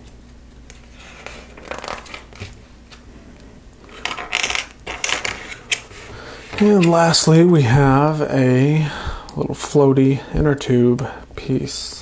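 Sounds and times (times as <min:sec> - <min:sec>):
plastic pieces clicking and rustling: 0:04.0 - 0:05.8.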